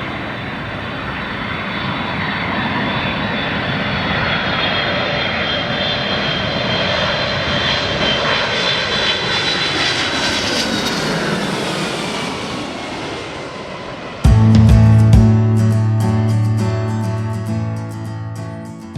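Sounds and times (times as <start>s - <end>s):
jet engine whine: 0.0s - 14.4s
airliner engines roaring: 0.0s - 14.6s.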